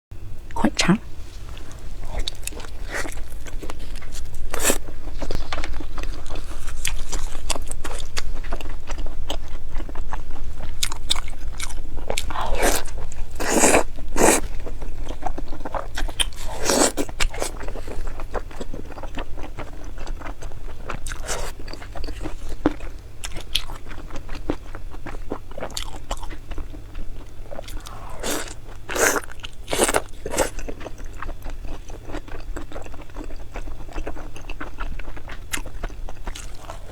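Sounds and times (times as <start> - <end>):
crunchy food bites and chews: 1.4 - 36.9.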